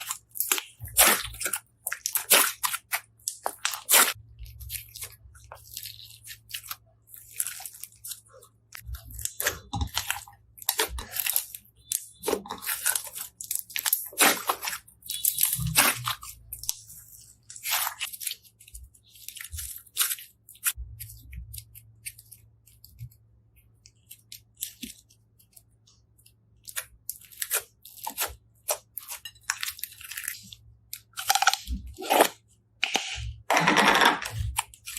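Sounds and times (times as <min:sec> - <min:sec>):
slime crackling and popping: 0:00.0 - 0:22.9.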